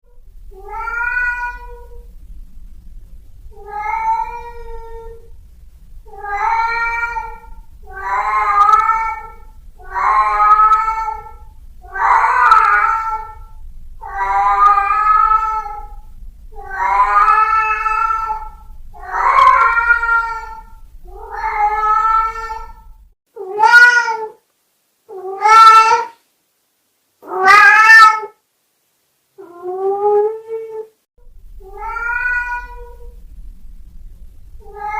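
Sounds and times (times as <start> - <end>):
cat meowing: 0.5 - 2.0, 3.5 - 5.3, 6.1 - 16.0, 16.6 - 22.8, 23.4 - 24.4, 25.1 - 26.2, 27.2 - 28.4, 31.6 - 33.2, 34.6 - 34.9.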